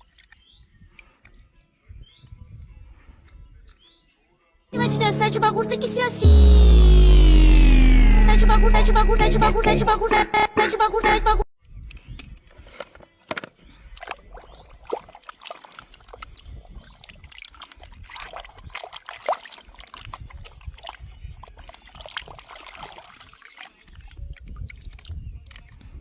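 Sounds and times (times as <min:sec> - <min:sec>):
water sloshing and trickling: 0:14.0 - 0:25.1.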